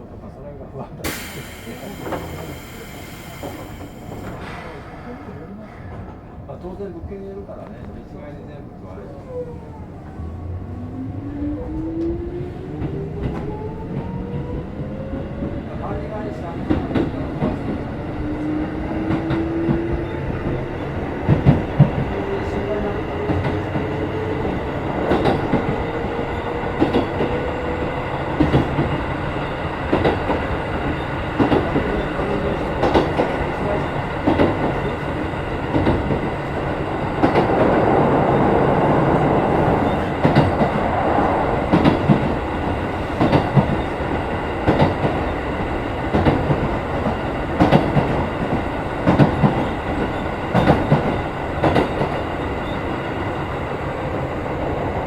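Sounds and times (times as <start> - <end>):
train motor whine: 1.1 - 4.4.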